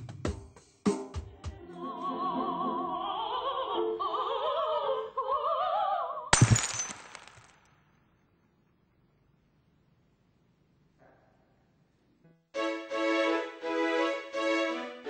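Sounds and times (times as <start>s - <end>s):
operatic singing voice: 1.4s - 6.3s
loud shattering crash: 6.4s - 7.6s.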